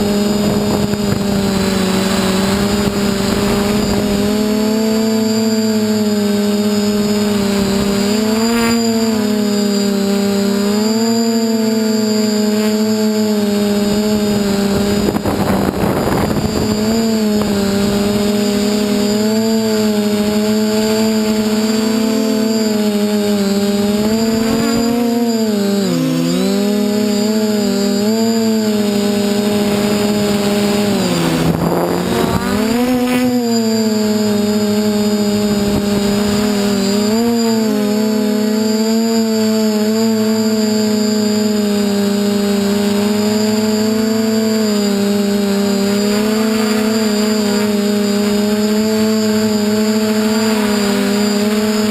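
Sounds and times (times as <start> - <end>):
drone propellers humming: 0.0 - 51.9
rush of noise: 28.2 - 36.9.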